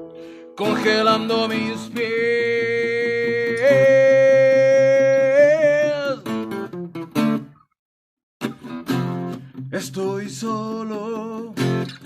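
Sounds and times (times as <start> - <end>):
strummed acoustic guitar: 0.0 - 7.7, 8.4 - 12.0
man singing a long note: 0.6 - 6.2.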